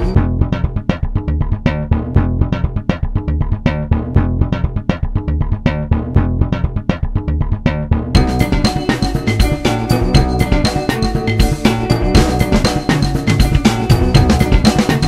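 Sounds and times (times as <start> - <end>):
bass: 0.0 - 15.0
steady beat: 0.0 - 15.0
plucked guitar: 7.6 - 15.0.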